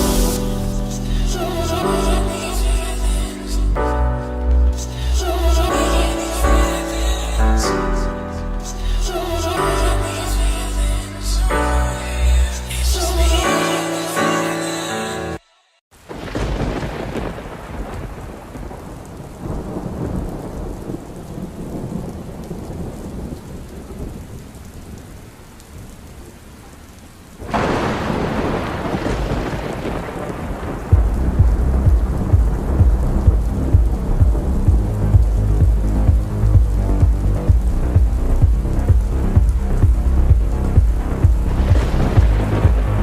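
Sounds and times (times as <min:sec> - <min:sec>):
rain hissing: 0:00.0 - 0:43.0
thunderclap: 0:16.1 - 0:24.3, 0:27.4 - 0:43.0
rolling thunder: 0:16.1 - 0:25.0, 0:27.4 - 0:43.0.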